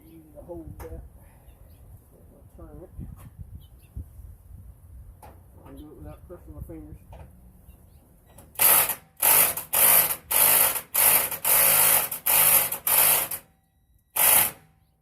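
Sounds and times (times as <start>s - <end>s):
impact wrench turning bolt: 8.5s - 13.5s, 14.2s - 14.6s.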